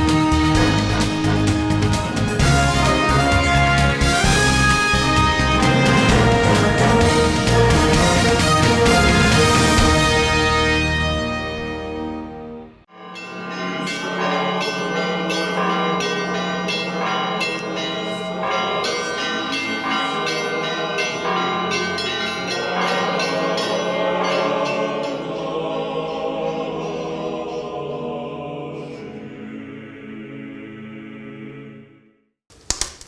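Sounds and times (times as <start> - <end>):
small church bells striking: 12.9 - 27.7.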